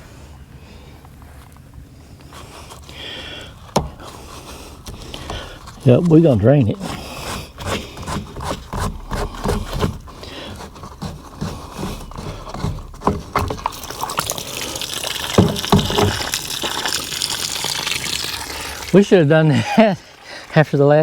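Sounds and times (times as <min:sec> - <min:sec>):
knocks and clicks on drain: 0:03.7 - 0:04.2, 0:06.8 - 0:14.5, 0:15.2 - 0:16.5
liquid rushing out: 0:13.6 - 0:20.9.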